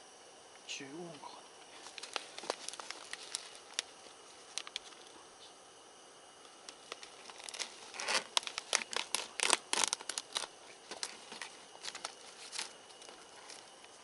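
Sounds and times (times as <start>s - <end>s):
material crinkling and tearing: 1.7s - 5.1s, 6.6s - 14.0s.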